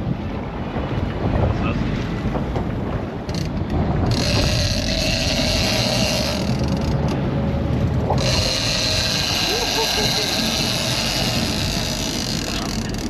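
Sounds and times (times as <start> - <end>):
low rumble: 0.0 - 13.0
fishing reel drag clicking: 4.1 - 6.9, 8.2 - 13.0.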